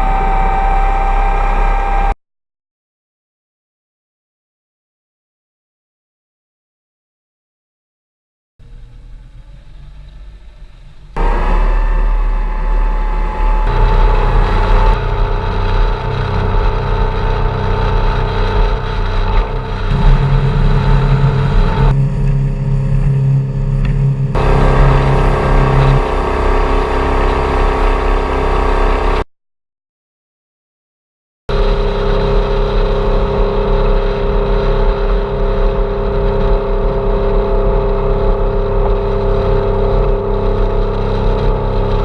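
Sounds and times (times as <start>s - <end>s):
boat engine running: 10.8s - 29.3s, 31.5s - 42.0s.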